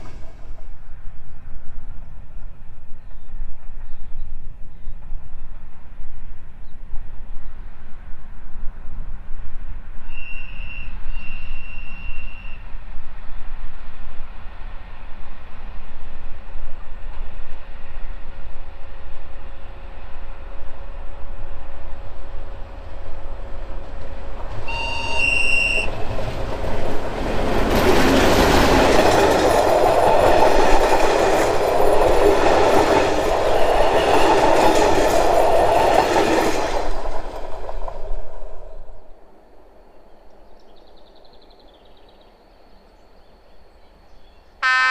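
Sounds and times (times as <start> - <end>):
locomotive engine and wheel noise: 14.4 - 40.0
locomotive horn blasts: 24.6 - 25.9, 44.6 - 44.9.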